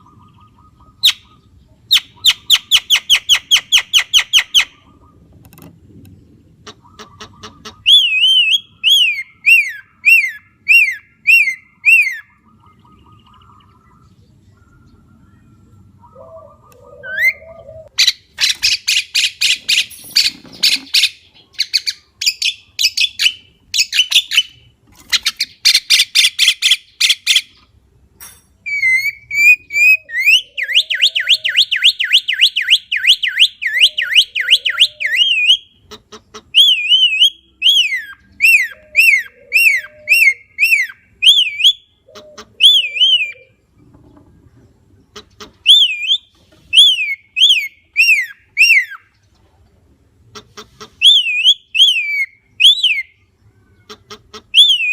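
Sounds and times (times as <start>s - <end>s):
bird warbling whistle: 7.6s - 13.6s, 28.7s - 35.7s, 42.6s - 43.5s, 45.7s - 49.1s, 51.0s - 53.2s, 54.6s - 54.9s.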